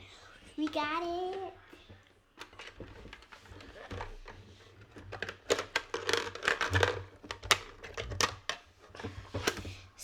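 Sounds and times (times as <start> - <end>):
hands handling toy vending machine: 0.6 - 1.6, 2.3 - 9.9.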